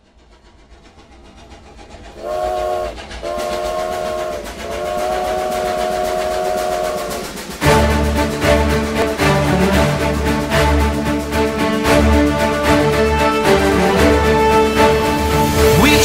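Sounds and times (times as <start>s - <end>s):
steam train chugging: 0.0s - 16.0s
multi-note train whistle blowing: 2.2s - 8.0s
music: 4.6s - 16.0s.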